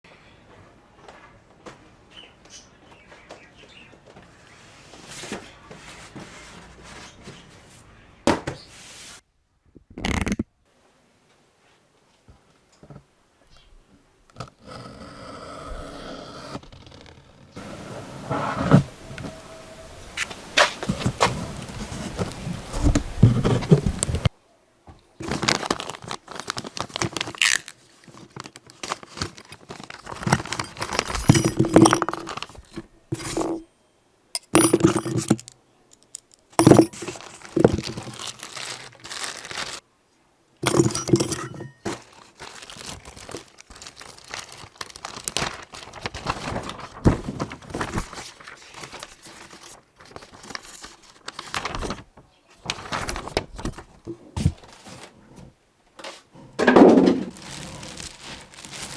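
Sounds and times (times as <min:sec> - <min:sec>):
cardboard and packing crinkling: 0:17.6 - 0:24.3, 0:25.2 - 0:33.6, 0:36.1 - 0:39.8, 0:40.6 - 0:55.3, 0:56.8 - 0:58.9.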